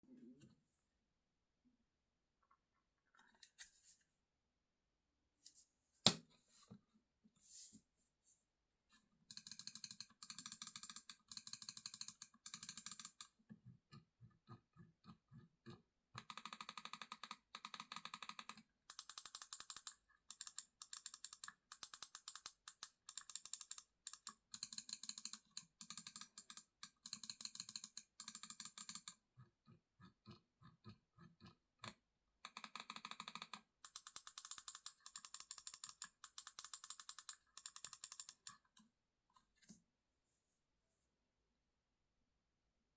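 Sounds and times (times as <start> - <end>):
computer mouse clicking: 15.0 - 29.2, 30.0 - 38.8.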